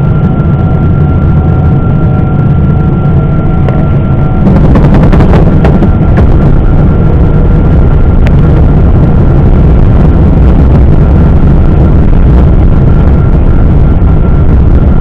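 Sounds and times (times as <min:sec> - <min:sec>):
jet engine cabin rumble: 0:00.0 - 0:15.0
thin high whine: 0:00.0 - 0:15.0.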